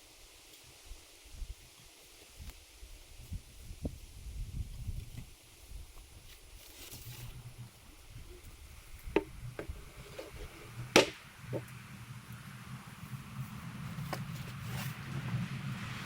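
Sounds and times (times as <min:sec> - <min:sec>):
sharp knocks: 0:10.9 - 0:11.6.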